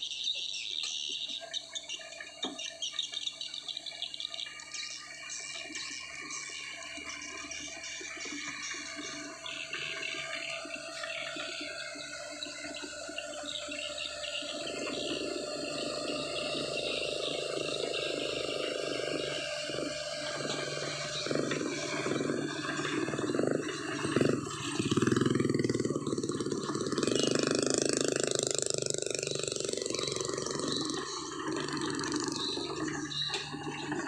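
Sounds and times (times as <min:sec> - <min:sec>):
diesel engine hum: 0:09.4 - 0:33.5.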